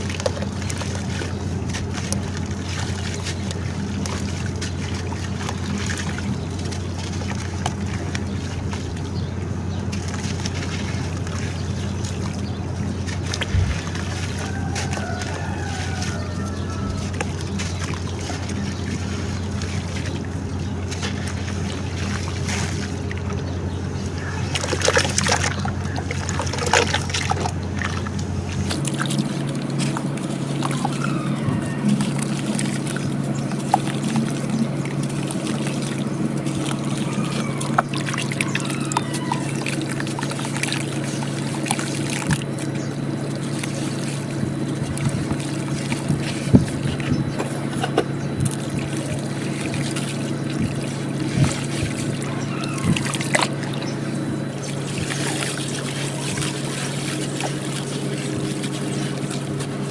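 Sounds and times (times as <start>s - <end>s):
steady hum: 0.0s - 59.9s
water sloshing and dribbling: 0.0s - 59.9s
wet cement squished by hand: 0.0s - 59.9s.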